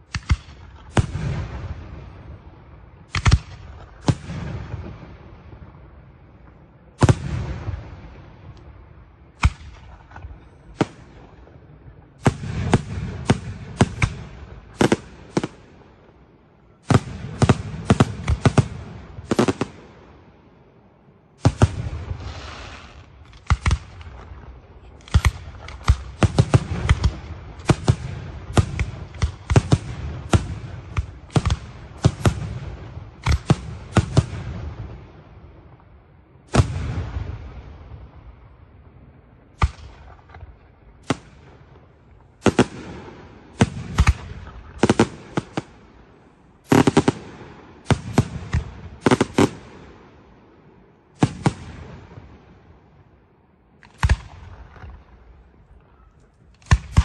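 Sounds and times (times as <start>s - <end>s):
fireworks bursting with sharp bangs: 0.0s - 20.4s, 21.2s - 52.9s, 53.8s - 57.0s
fireworks crackle: 21.4s - 32.4s, 46.6s - 47.3s.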